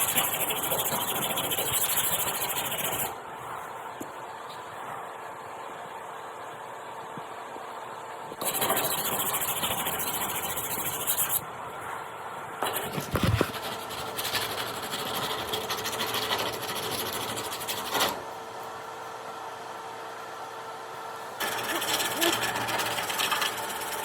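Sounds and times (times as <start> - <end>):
sanding car body filler: 0.0 - 3.1, 8.4 - 11.4, 13.5 - 18.0, 21.4 - 24.0.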